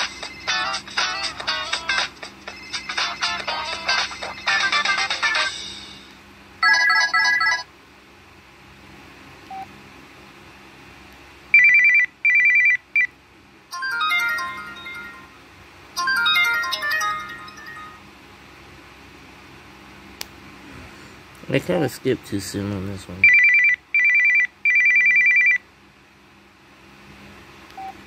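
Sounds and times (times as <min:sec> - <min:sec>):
phone ringtone melodies: 0:00.0 - 0:06.0, 0:06.6 - 0:07.7, 0:13.7 - 0:18.1, 0:23.2 - 0:25.6
trilling telephone ring: 0:06.6 - 0:07.7, 0:13.7 - 0:15.4, 0:16.0 - 0:18.1, 0:23.2 - 0:25.6
chime: 0:16.0 - 0:18.0.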